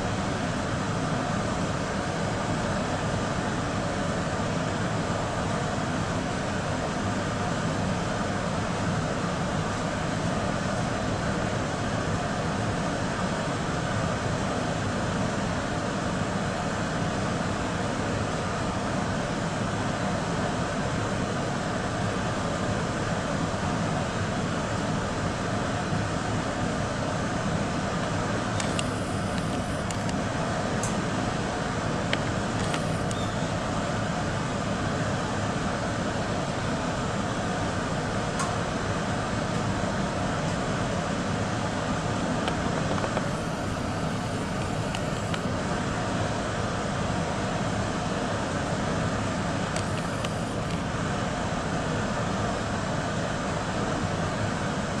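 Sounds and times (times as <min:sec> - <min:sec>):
faint bird chirps: 0:33.0 - 0:33.6.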